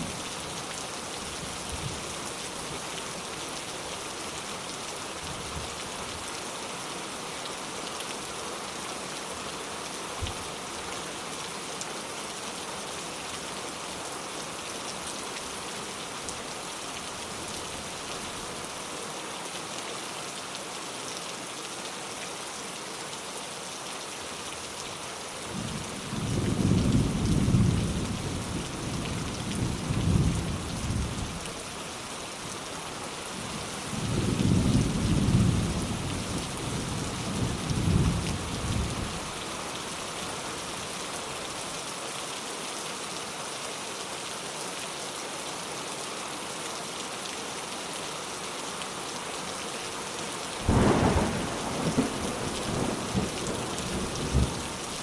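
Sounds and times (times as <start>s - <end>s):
steady rain: 0.0s - 55.0s
low rolling thunder: 50.6s - 54.6s.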